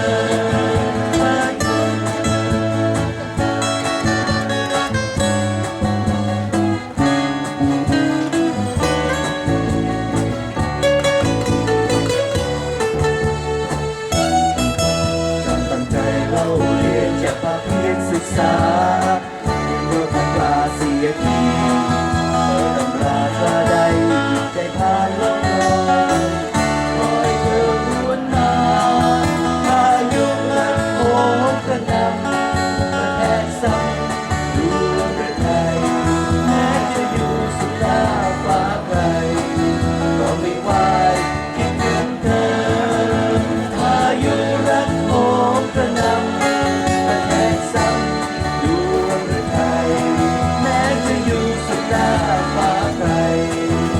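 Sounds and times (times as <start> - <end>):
person singing: 0.0 - 3.9, 15.3 - 53.9
guitar: 0.0 - 53.9
live band playing pop: 0.0 - 53.9.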